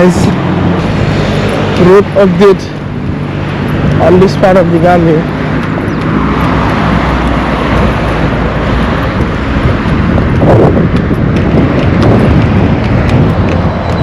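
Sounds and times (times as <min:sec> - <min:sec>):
vehicle engine humming: 0:00.0 - 0:14.0
wind buffeting microphone: 0:00.0 - 0:14.0.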